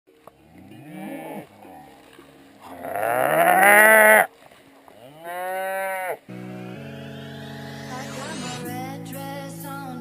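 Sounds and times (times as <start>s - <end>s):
long animal calls: 2.6s - 4.3s, 5.0s - 6.2s.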